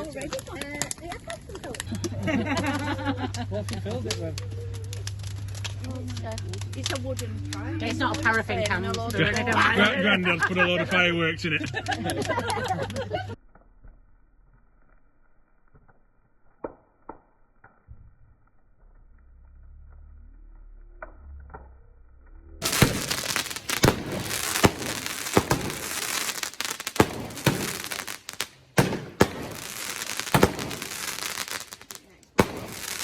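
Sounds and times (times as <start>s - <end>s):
fireworks cracking and popping: 0.0s - 10.2s, 11.6s - 19.2s, 22.6s - 33.0s
burning wood crackling: 0.0s - 10.4s, 22.6s - 33.0s.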